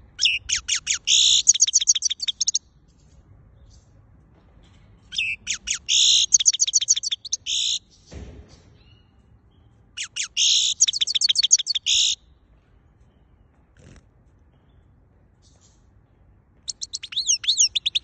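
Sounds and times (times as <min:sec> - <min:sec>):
bird twittering: 0:00.2 - 0:02.6, 0:05.1 - 0:08.1, 0:10.0 - 0:12.2, 0:16.7 - 0:18.0.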